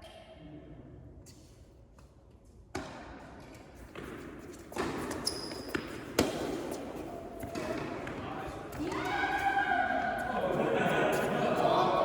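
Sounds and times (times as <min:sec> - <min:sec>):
tennis balls struck by rackets: 0:02.7 - 0:09.2
tennis balls bouncing on court: 0:02.7 - 0:09.5.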